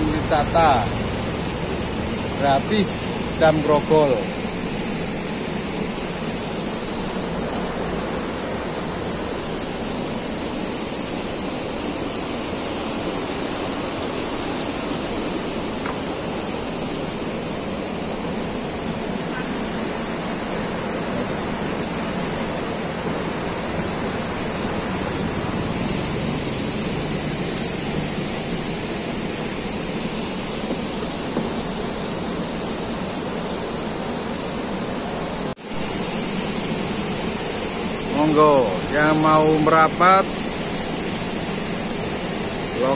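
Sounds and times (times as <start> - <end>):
water rushing over a weir: 0.0 - 32.8.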